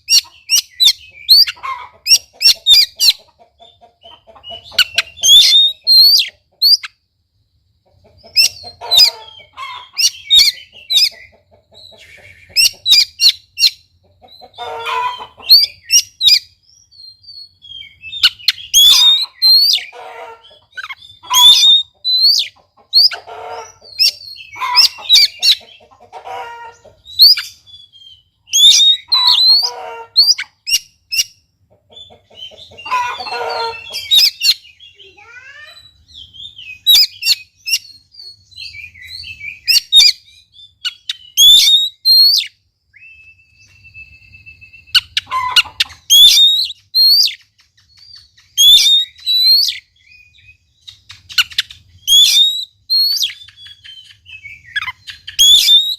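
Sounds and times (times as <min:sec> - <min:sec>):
bird singing whistled notes: 0:04.5 - 0:07.0, 0:15.5 - 0:19.9, 0:27.1 - 0:31.4, 0:35.8 - 0:45.3, 0:46.1 - 0:55.9.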